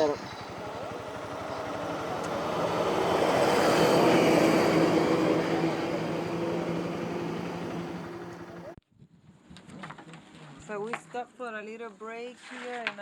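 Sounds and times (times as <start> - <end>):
motorcycle engine running: 0.0 - 8.8
rushing wind: 0.2 - 8.6.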